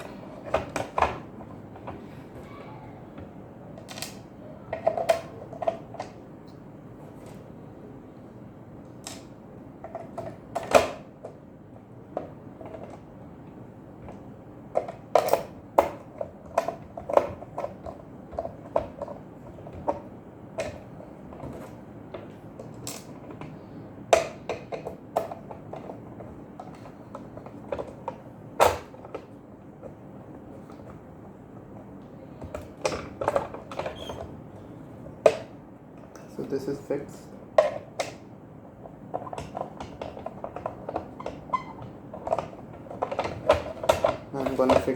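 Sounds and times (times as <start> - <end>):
plastic parts clicking and knocking: 0.0 - 2.6, 3.2 - 6.2, 12.1 - 31.0, 31.6 - 34.4, 37.5 - 44.9.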